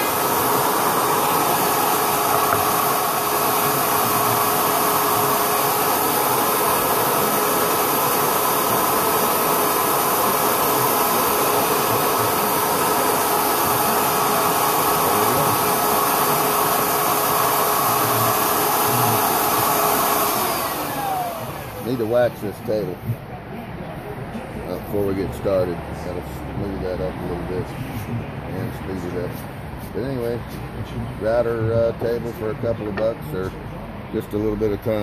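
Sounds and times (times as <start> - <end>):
electric router whining: 0.0 - 23.0.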